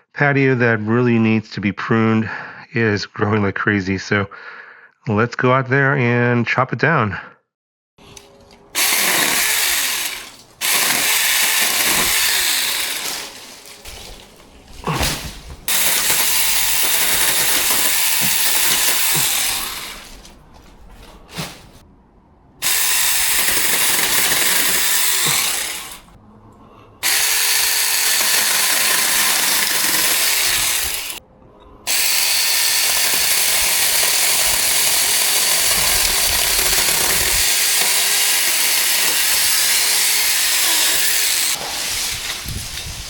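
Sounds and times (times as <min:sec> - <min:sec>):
electric chainsaw cutting branches: 0:08.0 - 0:21.8, 0:22.6 - 0:26.2, 0:27.0 - 0:31.2, 0:31.9 - 0:43.0.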